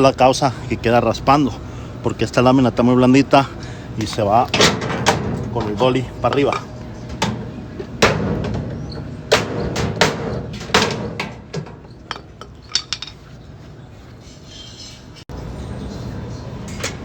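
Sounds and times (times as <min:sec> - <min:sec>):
steady background noise: 0:00.0 - 0:17.0
metal knocks on washing machine: 0:04.5 - 0:05.8, 0:06.4 - 0:12.4.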